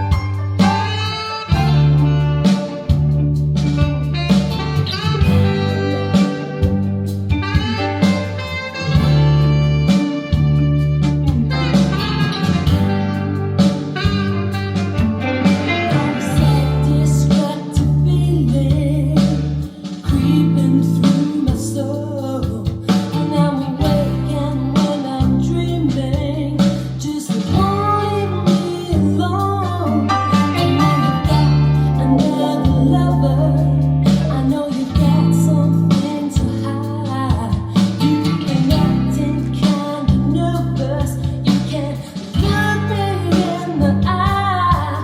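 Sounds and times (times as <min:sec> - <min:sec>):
heavy bass line: 0:00.0 - 0:45.0
song with singing and guitar: 0:00.0 - 0:45.0.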